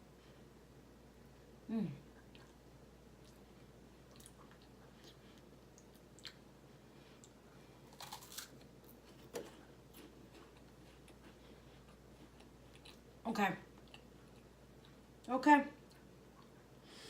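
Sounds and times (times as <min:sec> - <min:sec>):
chewing crisp wafer cookie: 0:02.2 - 0:06.5, 0:07.1 - 0:15.2.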